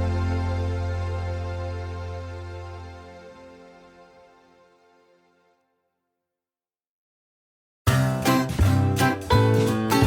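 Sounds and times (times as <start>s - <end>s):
background music with held notes: 0.0s - 5.7s, 7.9s - 10.0s.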